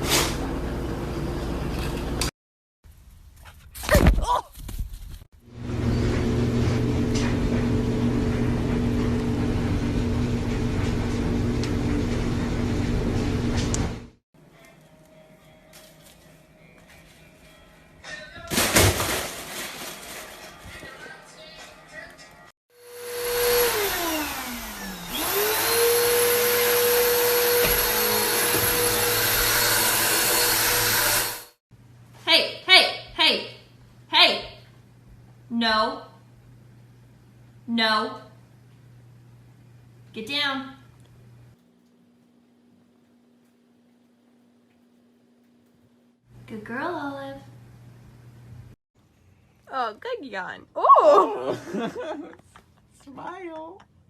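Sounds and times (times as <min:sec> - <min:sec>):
vacuum cleaner running: 0:05.5 - 0:14.2, 0:22.7 - 0:31.6.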